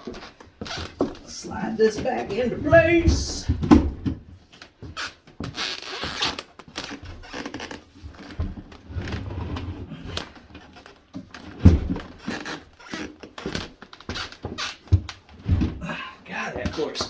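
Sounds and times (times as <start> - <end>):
floor squeaking underfoot: 4.8 - 9.2, 11.8 - 16.0
cabinet scraping across floor: 8.8 - 10.0.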